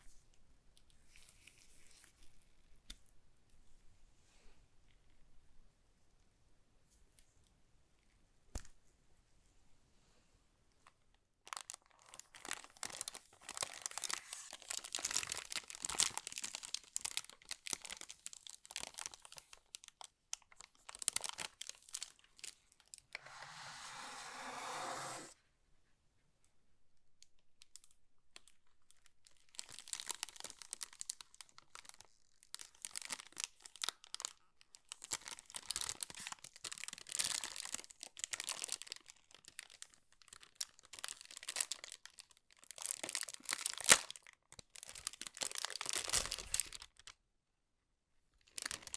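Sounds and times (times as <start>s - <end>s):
wrapping crinkling: 10.9s - 23.2s, 27.6s - 47.2s, 48.4s - 48.9s
packaging tearing: 35.0s - 47.1s.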